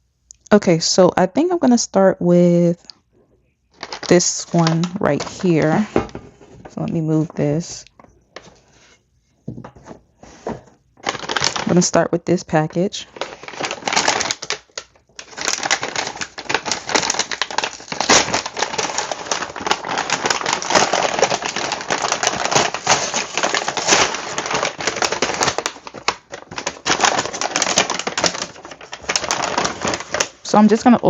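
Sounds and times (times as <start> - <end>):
packaging crackling and rustling: 3.7 - 7.7, 9.7 - 12.0, 13.0 - 30.9.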